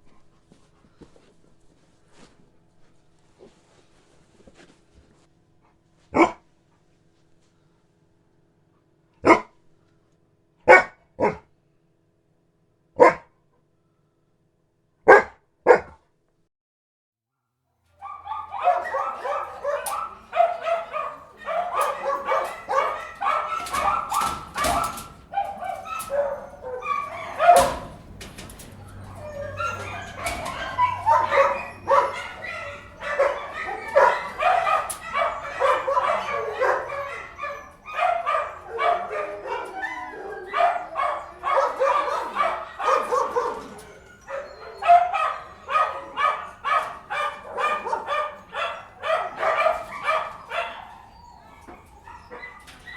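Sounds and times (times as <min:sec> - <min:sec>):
dogs barking angrily: 0:06.1 - 0:06.4, 0:09.2 - 0:09.5, 0:10.7 - 0:11.5, 0:13.0 - 0:13.3, 0:15.1 - 0:16.0, 0:18.0 - 0:52.9.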